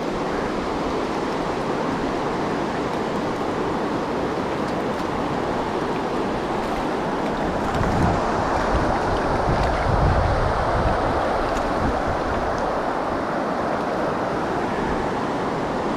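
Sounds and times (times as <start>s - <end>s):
creek water running over rocks: 0.0s - 15.9s
wind buffeting microphone: 4.9s - 15.9s.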